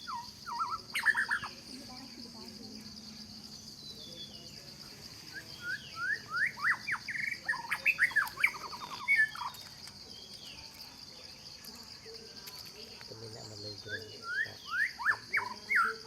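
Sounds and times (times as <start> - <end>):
high insect drone: 0.0 - 16.0
songbird singing: 0.0 - 16.0.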